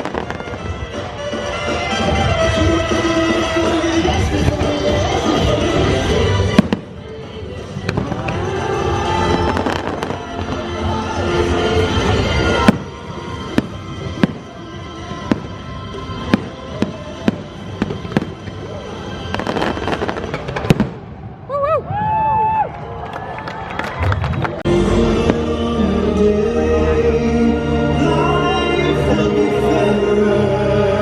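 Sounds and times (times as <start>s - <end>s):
music soundtrack: 0.0s - 21.4s, 24.0s - 31.0s
fireworks bangs: 0.0s - 22.0s.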